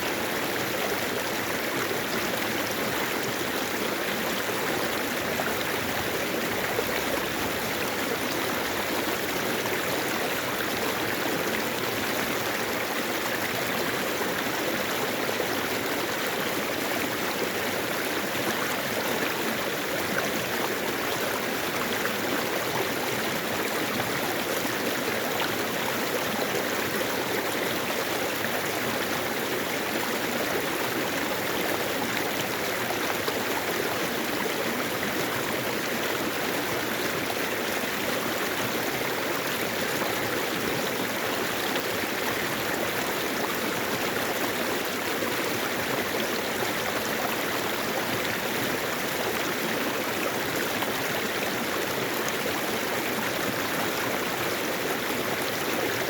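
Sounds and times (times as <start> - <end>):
stream flowing over rocks: 0.0 - 56.0.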